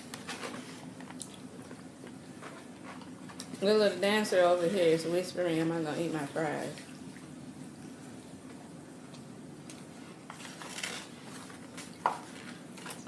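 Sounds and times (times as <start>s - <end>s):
eating and food-handling noises: 0.0s - 3.8s, 7.8s - 13.0s
low room hum: 0.0s - 13.0s.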